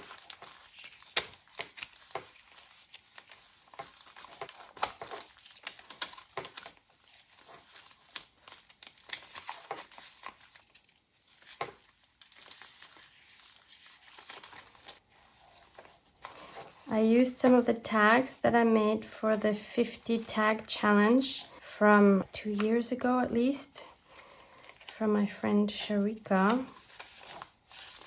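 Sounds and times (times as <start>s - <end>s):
sharp paper crackle: 0.0s - 16.9s, 26.4s - 28.0s
paper pages rustling: 0.0s - 21.5s, 23.8s - 28.0s.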